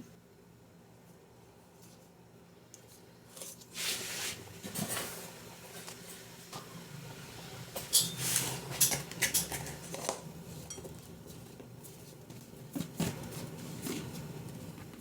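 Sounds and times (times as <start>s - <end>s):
cutlery clinking on dishes: 8.8s - 11.0s.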